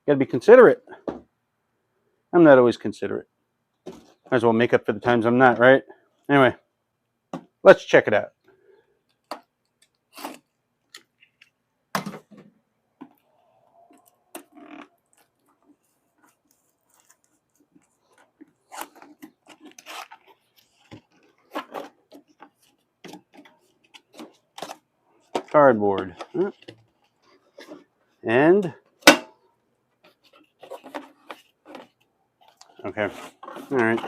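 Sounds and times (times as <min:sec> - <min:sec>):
cardboard rustling and crinkling: 0:14.0 - 0:28.2, 0:30.0 - 0:34.0.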